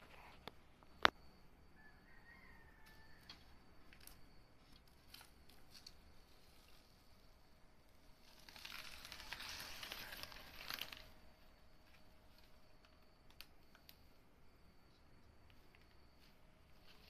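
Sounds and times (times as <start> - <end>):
plastic packaging crinkling: 8.2 - 11.2.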